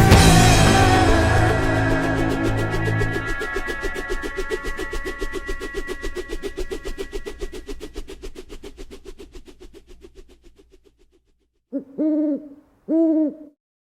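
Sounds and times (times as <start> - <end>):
music with pulsing beat: 0.0 - 4.2
low hooting tones: 0.0 - 8.3, 11.8 - 13.5.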